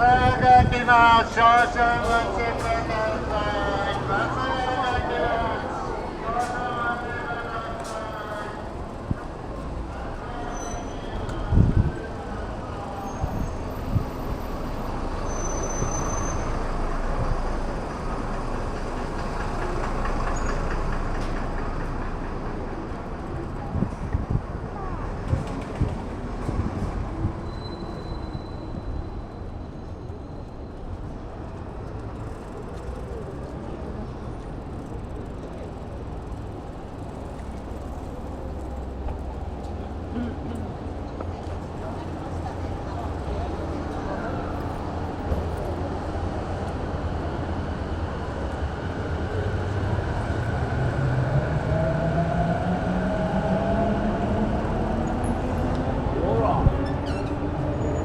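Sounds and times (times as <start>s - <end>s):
city traffic rumble: 0.0s - 58.0s.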